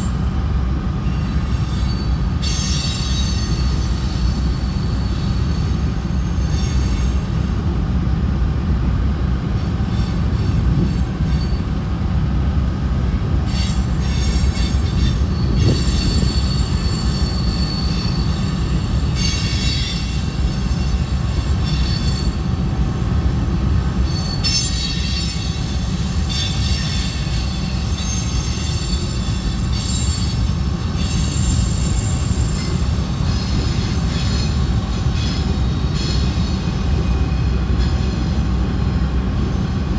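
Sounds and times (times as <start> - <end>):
freight train rumbling past: 0.0 - 39.9
train wheels squealing: 0.9 - 7.6, 9.6 - 11.9, 13.1 - 39.9.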